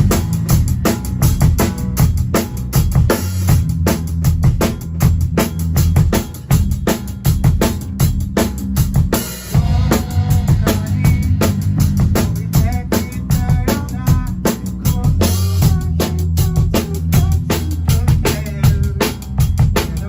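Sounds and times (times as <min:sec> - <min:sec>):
drum kit beat: 0:00.0 - 0:20.0
electric bass line: 0:00.0 - 0:20.0
electric guitar: 0:09.4 - 0:19.1.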